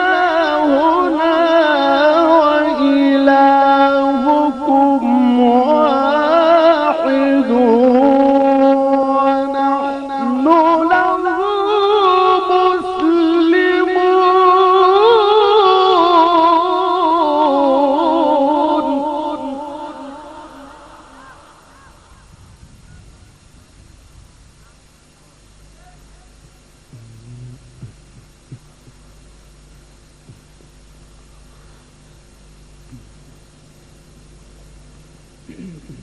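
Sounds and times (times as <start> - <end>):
person reciting melodically: 0.0 - 21.7, 25.7 - 29.2.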